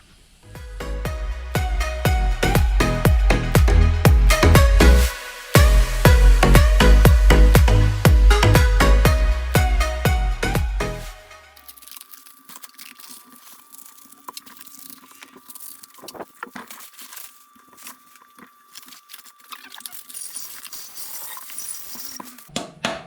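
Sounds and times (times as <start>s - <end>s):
faint steady hum: 11.6s - 22.5s
tools and parts clicking: 11.6s - 22.5s.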